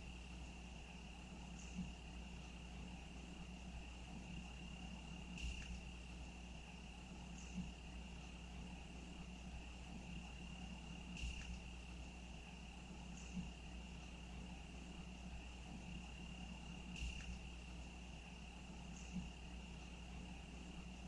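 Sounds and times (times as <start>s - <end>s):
crickets trilling: 0.0s - 21.0s
faint low hum: 0.0s - 21.0s.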